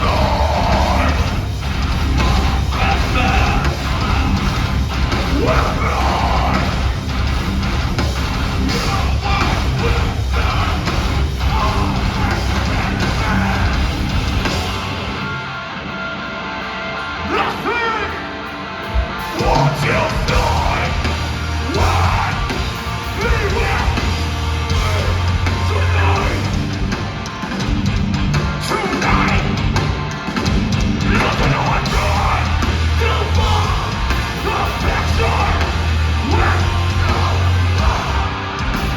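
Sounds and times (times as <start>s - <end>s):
person singing and yelling: 0.0s - 7.0s, 8.6s - 14.5s, 17.2s - 18.5s, 19.2s - 26.6s, 28.6s - 29.8s, 31.0s - 38.9s
bass: 0.0s - 16.0s, 19.0s - 38.9s
distorted guitars: 0.0s - 38.9s
drums: 0.0s - 38.9s.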